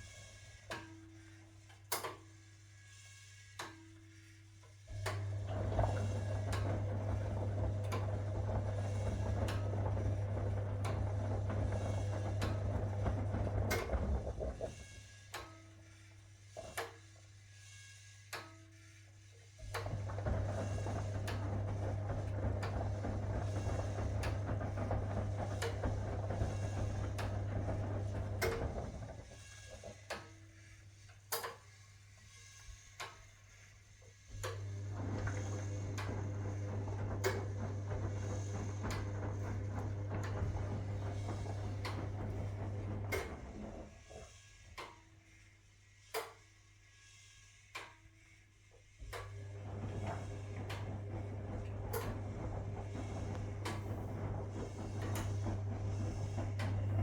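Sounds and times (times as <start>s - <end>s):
washing machine motor humming: 4.9s - 14.9s, 19.6s - 31.4s, 33.9s - 44.8s, 49.0s - 57.0s.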